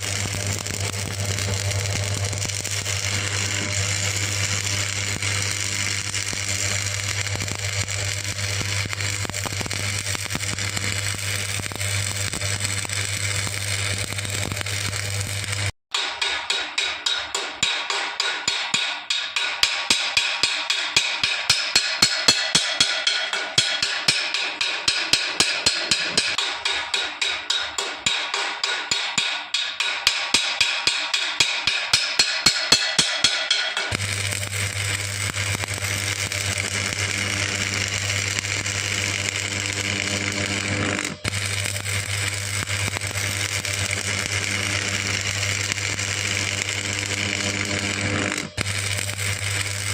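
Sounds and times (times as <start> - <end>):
welding arc hissing: 0.0 - 15.8, 31.4 - 49.9
welding arc crackling: 0.0 - 16.5, 19.4 - 27.1, 29.9 - 49.9.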